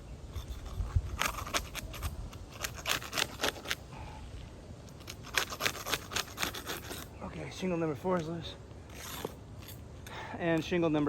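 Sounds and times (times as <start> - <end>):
shingle seal strip tearing: 0.3 - 3.8, 4.9 - 7.1, 8.9 - 9.8.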